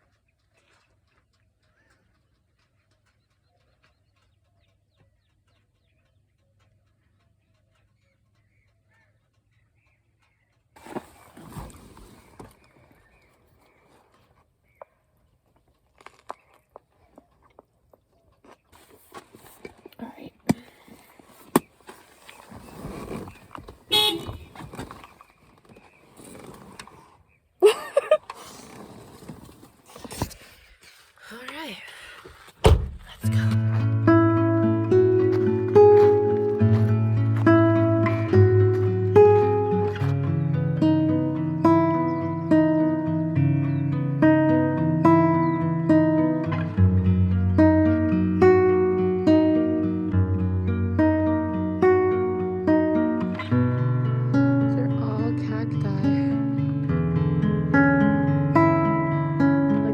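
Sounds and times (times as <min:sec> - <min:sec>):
faint birds chirping: 0:00.0 - 0:27.9, 0:33.6 - 0:59.9
vehicle horn toot: 0:23.9 - 0:24.6.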